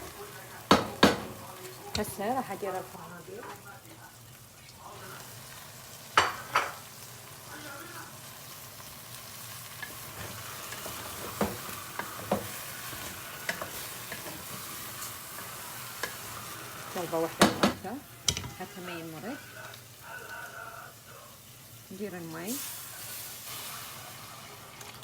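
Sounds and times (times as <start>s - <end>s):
food sizzling in pot: 0.0s - 25.0s
frozen vegetables knocking into pot: 0.7s - 2.2s, 17.4s - 18.6s.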